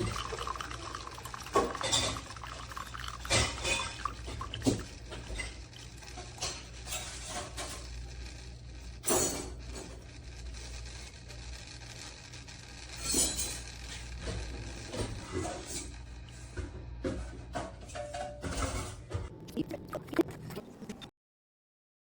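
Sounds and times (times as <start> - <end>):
dishes clinking and knocking: 0.0 - 5.6, 16.6 - 19.3.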